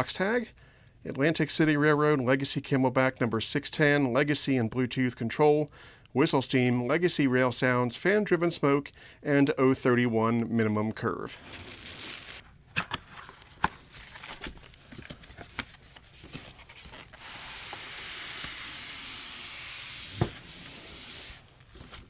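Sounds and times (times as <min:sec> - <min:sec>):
cardboard rubbing hiss: 0:16.0 - 0:22.0.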